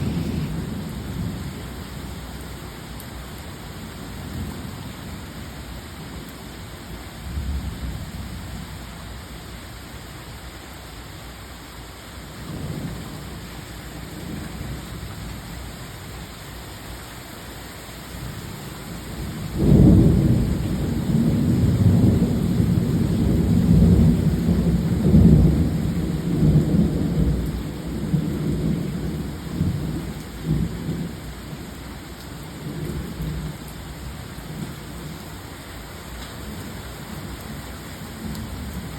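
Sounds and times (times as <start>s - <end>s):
loud thunderclap: 0.0s - 1.4s, 19.5s - 27.4s
thunder rumbling: 0.0s - 1.6s, 19.2s - 31.6s
heavy rain: 0.0s - 38.9s.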